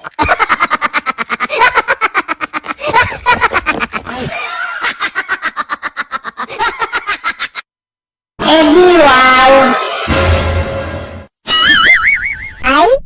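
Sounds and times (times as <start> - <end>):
laughter sound effect: 0.0 - 7.7.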